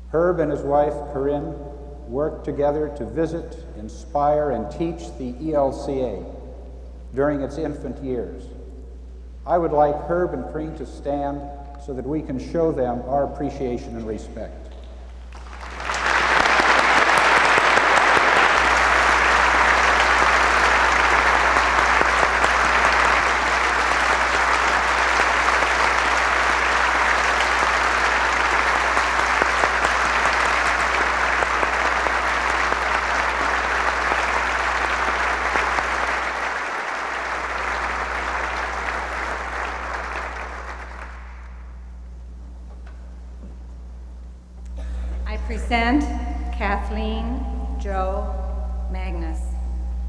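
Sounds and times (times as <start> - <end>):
congregation applauding: 15.2 - 41.9.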